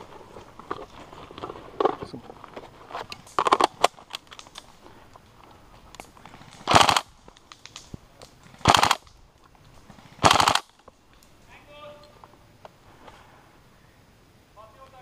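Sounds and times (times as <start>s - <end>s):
airsoft rifle full-auto bursts: 6.7s - 7.1s, 8.6s - 9.0s, 10.2s - 10.7s.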